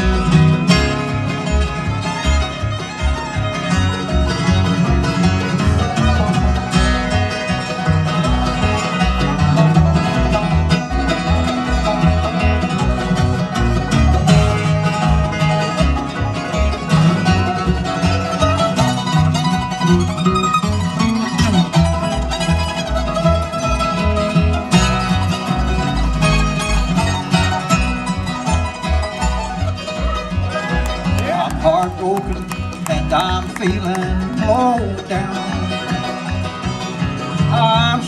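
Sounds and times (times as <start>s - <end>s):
bluegrass band playing: 30.9s - 34.6s.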